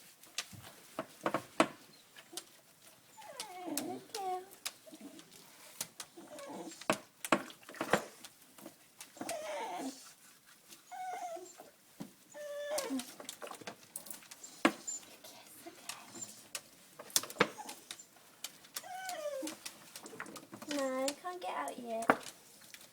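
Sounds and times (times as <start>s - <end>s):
dog whimpering: 3.1s - 5.3s, 6.1s - 6.8s, 9.2s - 10.1s, 10.9s - 13.2s, 17.3s - 18.2s, 18.8s - 19.7s.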